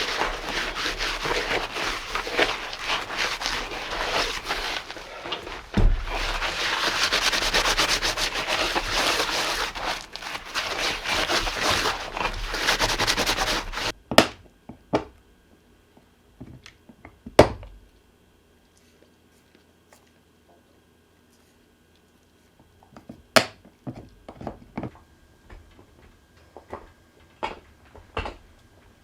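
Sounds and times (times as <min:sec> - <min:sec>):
dense crackling rustling: 0:00.0 - 0:13.9.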